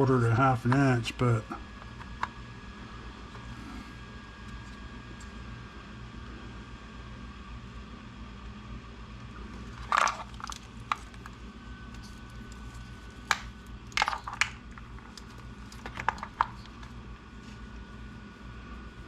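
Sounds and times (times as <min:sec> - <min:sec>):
steady low hum: 0:00.0 - 0:19.0
plastic parts clicking and rustling: 0:09.6 - 0:17.0.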